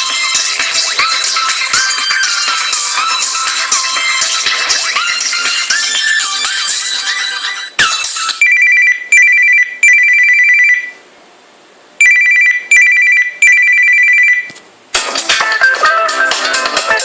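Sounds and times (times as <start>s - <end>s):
ringtone with guitar and drums: 0.0s - 11.0s, 12.0s - 17.0s
electronic two-tone phone ring: 8.4s - 11.0s, 12.0s - 14.6s.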